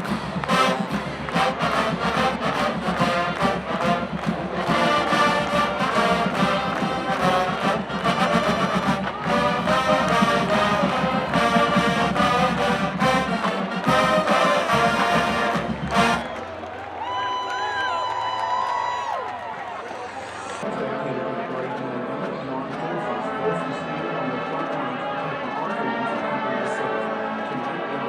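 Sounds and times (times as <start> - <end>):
steady drum beat: 0.0 - 16.2
marching band brass: 0.0 - 17.0, 19.4 - 28.0.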